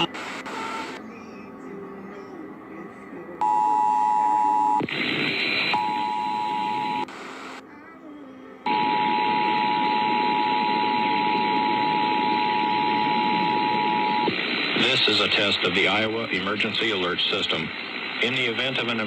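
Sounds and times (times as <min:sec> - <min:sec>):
radio hiss: 0:00.0 - 0:01.2, 0:04.5 - 0:07.7, 0:08.7 - 0:19.0.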